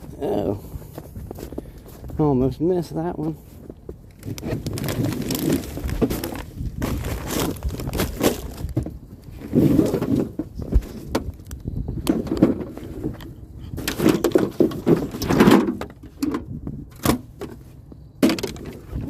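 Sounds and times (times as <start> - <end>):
scrap items clattering and scraping: 3.4 - 11.3, 12.0 - 19.0.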